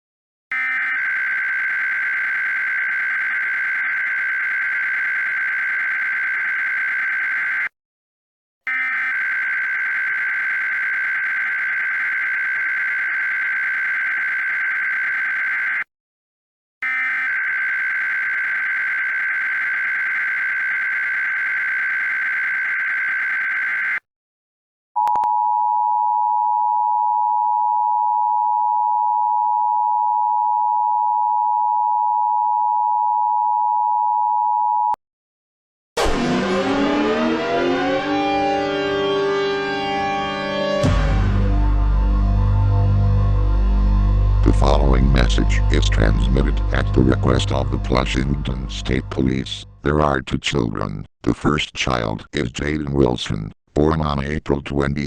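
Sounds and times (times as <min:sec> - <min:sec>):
screechy digital data tone: 0:00.6 - 0:07.7, 0:08.7 - 0:15.9, 0:16.8 - 0:24.0, 0:36.8 - 0:41.0, 0:45.2 - 0:49.4.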